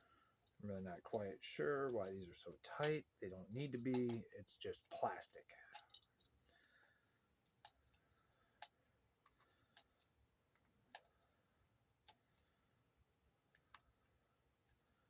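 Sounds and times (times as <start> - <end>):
faint hardware clicks: 0.4 - 6.8, 7.4 - 12.6.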